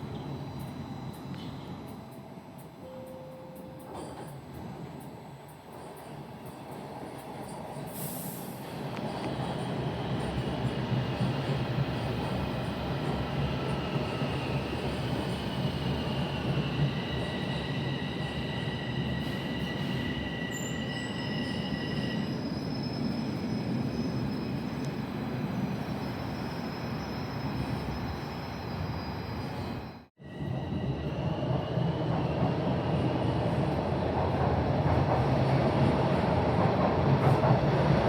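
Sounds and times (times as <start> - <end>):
train rumbling on tracks: 0.0 - 38.0
high wheel squeal: 17.1 - 24.7.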